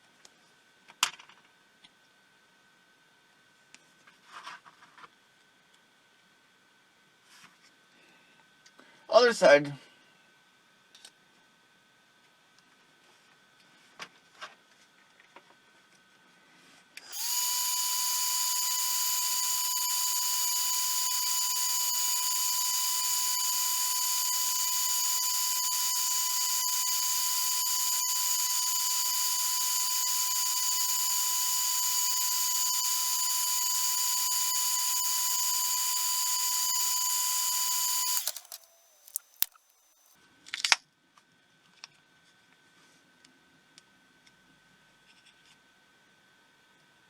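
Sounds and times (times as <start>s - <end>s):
rotary tool whining: 17.1s - 40.2s.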